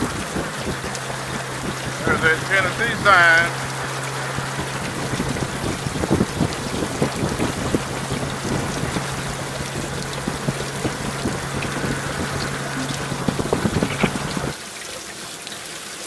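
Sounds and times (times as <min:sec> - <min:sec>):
constant low hum: 0:00.0 - 0:14.5
raindrops ticking: 0:00.0 - 0:14.6
steady rush: 0:01.7 - 0:04.7.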